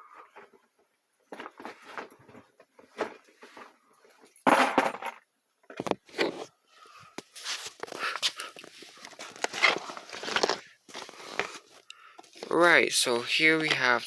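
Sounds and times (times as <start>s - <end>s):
objects rustling and clattering: 0.0s - 12.7s.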